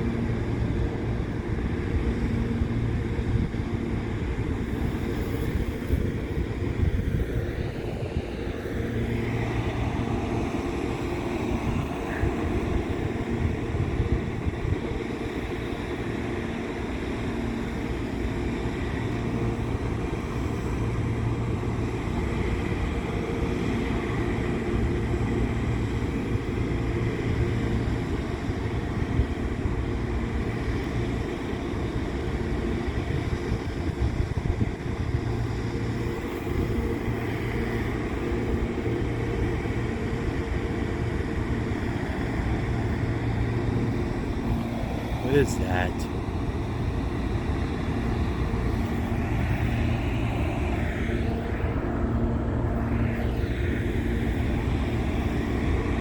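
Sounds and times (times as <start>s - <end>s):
diesel engine drone: 0.0s - 56.0s.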